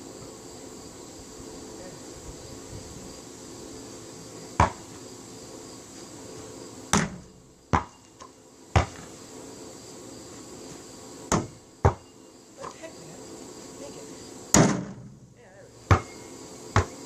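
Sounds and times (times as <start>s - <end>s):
basketball bouncing thuds: 4.6s - 4.8s, 6.9s - 8.0s, 8.8s - 9.1s, 11.3s - 12.0s, 15.9s - 16.1s.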